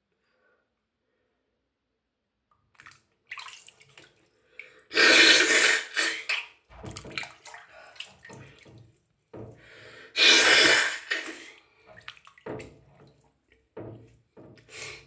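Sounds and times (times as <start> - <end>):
bath water sloshing and splashing: 2.5 - 15.0.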